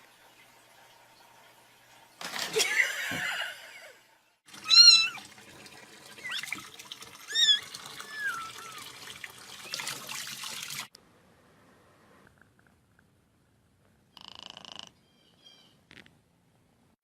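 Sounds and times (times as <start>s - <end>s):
cat meowing: 4.6s - 5.2s.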